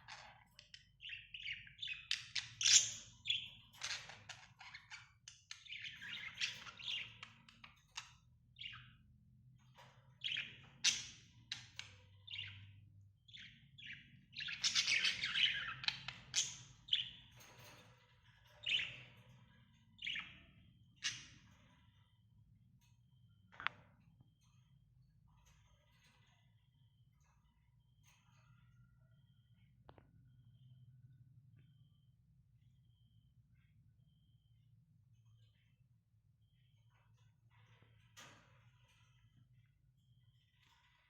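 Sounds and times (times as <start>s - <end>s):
parrots chirping and chattering: 0.0s - 9.0s, 9.6s - 22.3s.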